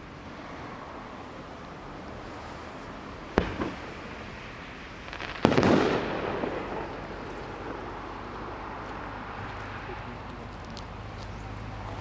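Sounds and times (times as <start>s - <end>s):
firework hissing and crackling: 2.2s - 10.0s
firework bang: 3.3s - 4.4s, 5.0s - 9.4s.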